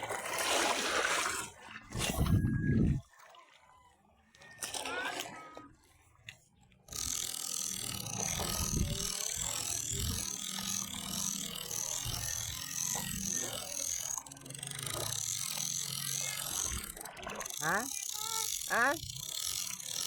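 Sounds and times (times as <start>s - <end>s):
fishing reel ratcheting: 2.0s - 3.0s, 6.8s - 20.0s.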